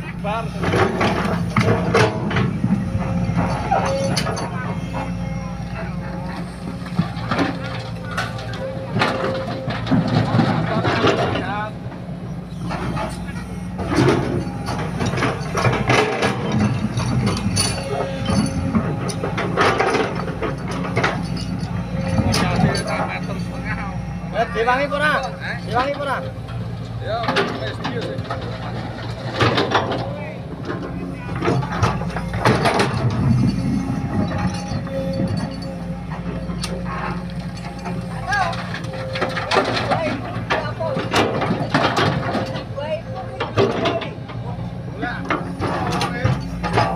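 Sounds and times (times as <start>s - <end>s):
excavator diesel engine running: 0.0s - 46.9s
machine clanks and rattles: 0.2s - 46.9s.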